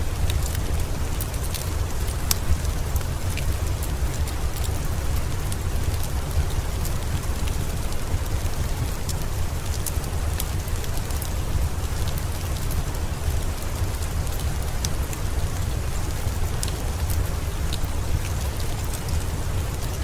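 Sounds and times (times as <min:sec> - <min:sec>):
steady rain: 0:00.0 - 0:20.0
wood fire crackling: 0:00.0 - 0:20.0.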